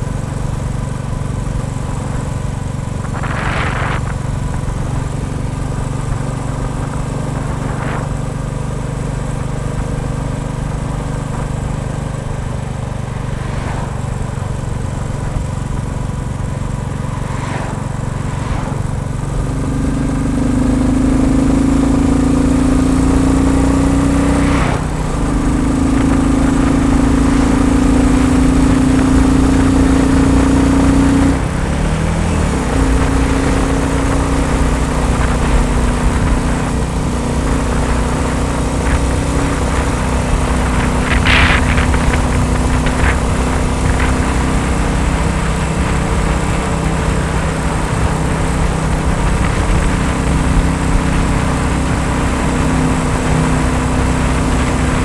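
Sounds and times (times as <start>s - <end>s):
motorcycle engine running: 0.0s - 55.0s
short rush of noise: 16.6s - 19.7s.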